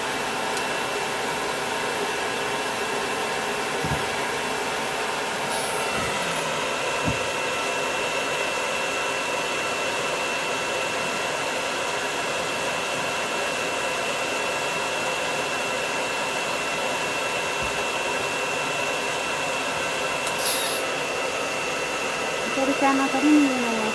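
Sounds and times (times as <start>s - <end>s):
hair dryer blowing: 0.1s - 9.2s, 15.4s - 23.9s.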